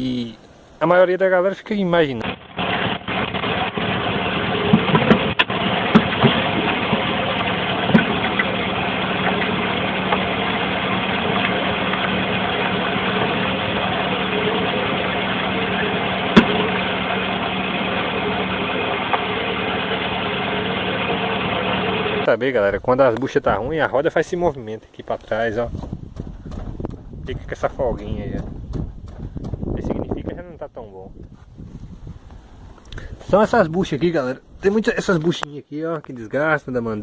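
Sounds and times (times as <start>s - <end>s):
car engine humming: 2.2s - 22.3s
suspension knocks: 2.2s - 22.3s, 25.7s - 29.8s.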